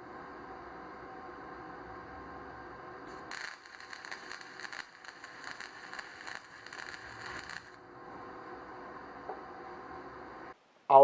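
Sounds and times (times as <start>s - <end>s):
welding arc crackling: 3.1s - 7.8s.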